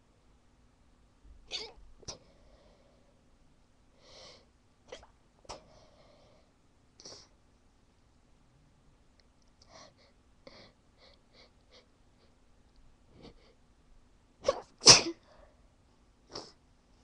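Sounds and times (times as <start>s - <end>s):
person sneezing: 14.4s - 15.2s.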